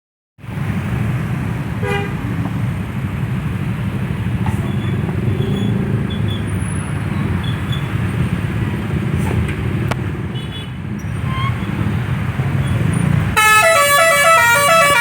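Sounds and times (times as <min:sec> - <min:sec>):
vehicle engines rumbling: 0:00.4 - 0:15.0
bus horn toot: 0:01.8 - 0:02.2, 0:13.4 - 0:15.0.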